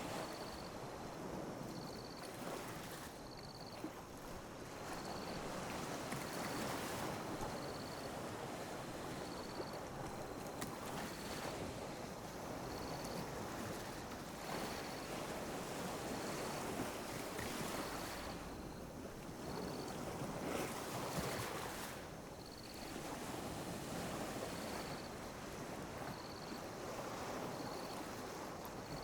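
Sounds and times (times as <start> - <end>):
small waves lapping on beach: 0.0 - 29.0.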